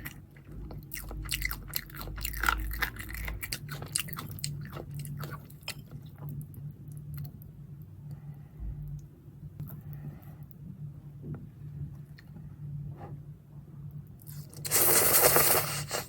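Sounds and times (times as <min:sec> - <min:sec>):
chewing crunchy food: 0:00.0 - 0:07.5, 0:14.2 - 0:16.0.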